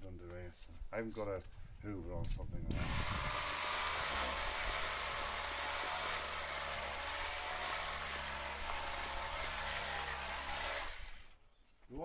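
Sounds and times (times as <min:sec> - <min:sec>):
orbital sander motor hum: 0:02.8 - 0:11.3.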